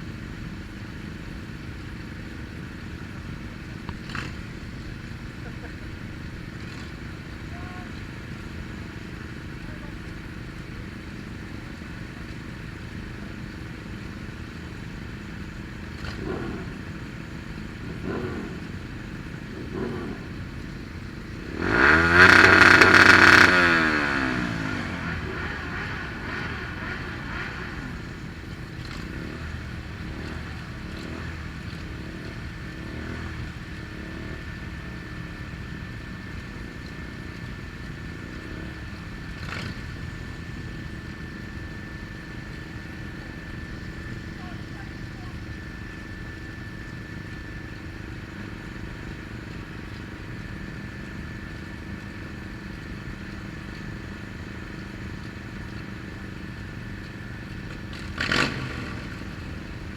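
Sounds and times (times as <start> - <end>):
motorcycle engines revving: 0.0 - 59.9
motorcycle passing at speed: 15.9 - 17.1, 17.7 - 35.6, 54.6 - 59.9.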